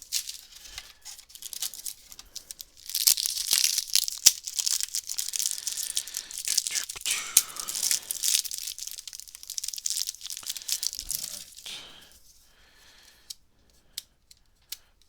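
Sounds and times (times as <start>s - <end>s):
wrapper tearing and crinkling: 0.0s - 11.9s.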